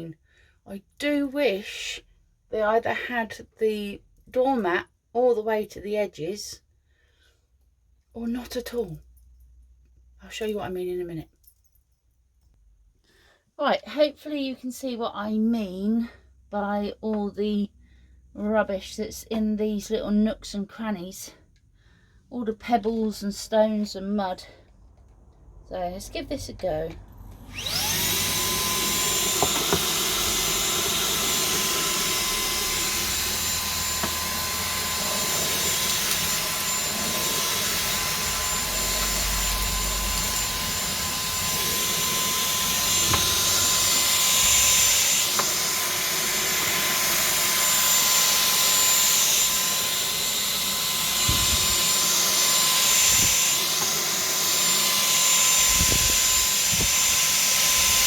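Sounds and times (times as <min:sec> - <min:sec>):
vacuum cleaner motor whine: 0:27.1 - 0:58.0
vacuum sucking up pebbles: 0:27.5 - 0:58.0.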